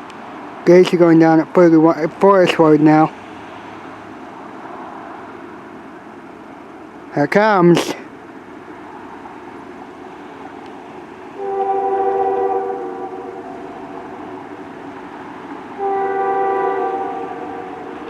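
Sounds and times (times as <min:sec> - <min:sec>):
locomotive air horn blast: 0:11.4 - 0:14.4, 0:15.8 - 0:18.0.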